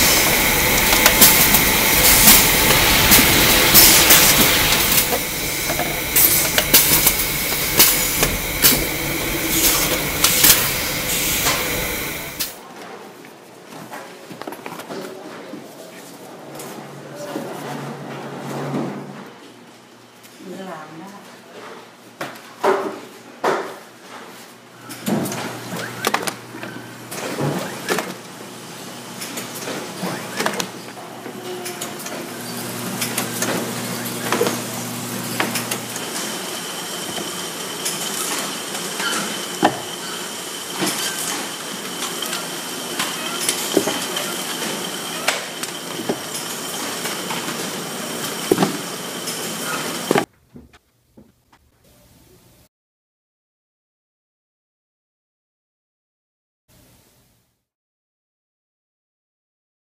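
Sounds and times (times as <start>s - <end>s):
machinery clanks and clicks: 0.0s - 12.6s, 29.2s - 50.3s
machinery hiss and hum: 0.0s - 12.6s, 31.4s - 50.3s.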